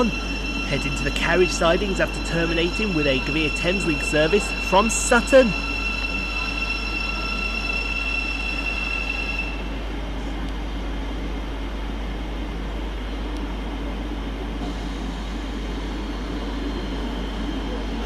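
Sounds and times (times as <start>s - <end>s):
high whine: 0.0s - 10.4s
train rumble: 0.0s - 18.0s.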